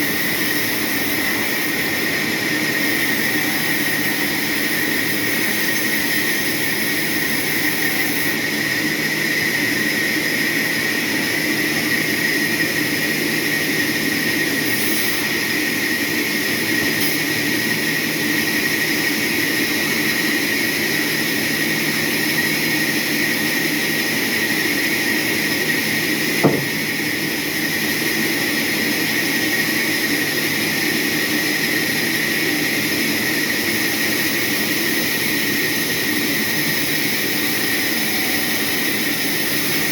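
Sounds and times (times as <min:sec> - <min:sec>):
sharp click: 0:26.4 - 0:26.9.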